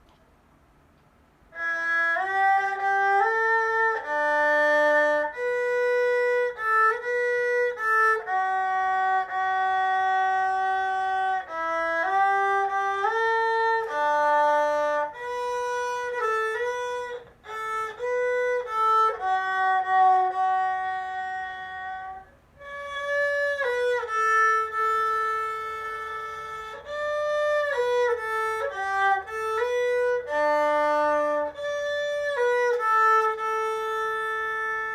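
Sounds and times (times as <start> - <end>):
erhu playing slow melody: 1.5 - 34.9.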